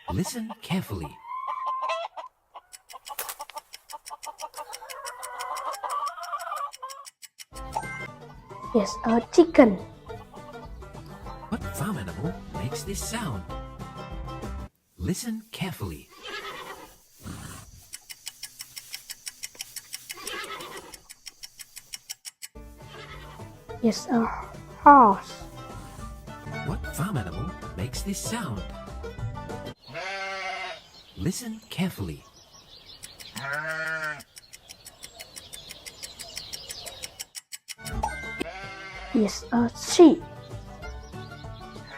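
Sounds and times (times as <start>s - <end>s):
chickens clucking: 0.0s - 13.4s, 15.5s - 26.6s, 33.0s - 38.5s
breathy horse call: 16.1s - 17.8s
horse hooves clip-clopping: 16.1s - 22.2s.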